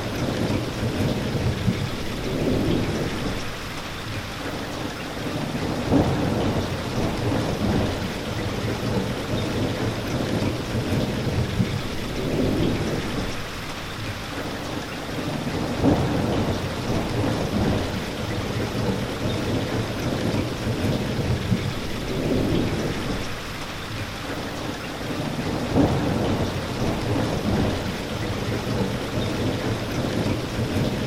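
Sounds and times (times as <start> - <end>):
steady rain falling: 0.0 - 31.0
distant thunder rumbles: 5.6 - 13.6, 15.5 - 23.5, 25.4 - 31.0.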